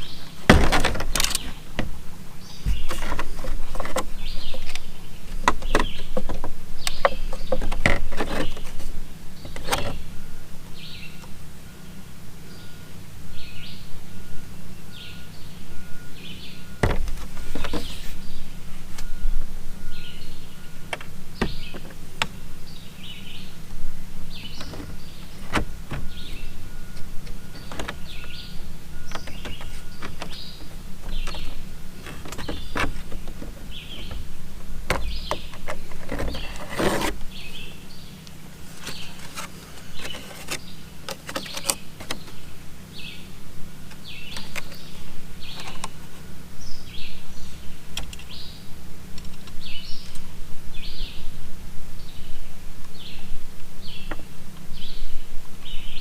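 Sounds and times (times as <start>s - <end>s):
birds chirping: 0.0s - 56.0s
steady low hum: 0.0s - 56.0s
scraping: 2.6s - 10.1s, 16.8s - 19.2s, 23.5s - 37.5s, 38.6s - 42.4s.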